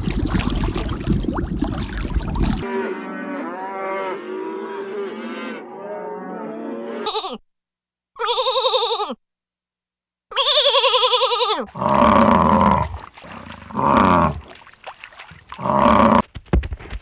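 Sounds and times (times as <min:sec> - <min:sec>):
loud quavering bleat: 0:07.0 - 0:07.4, 0:08.2 - 0:09.2, 0:10.3 - 0:13.0, 0:15.6 - 0:16.2
farm animals calling: 0:15.5 - 0:16.2.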